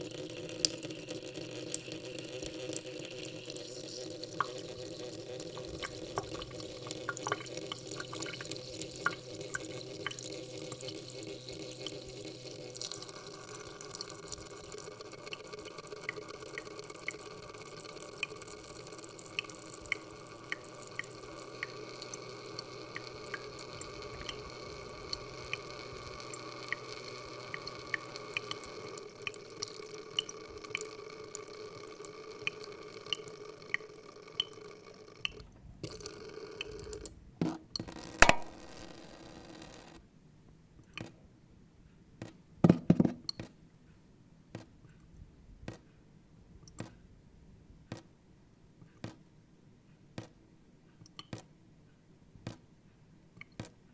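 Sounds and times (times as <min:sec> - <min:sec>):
tap water splashing in metal sink: 0:05.6 - 0:10.2, 0:37.5 - 0:38.9.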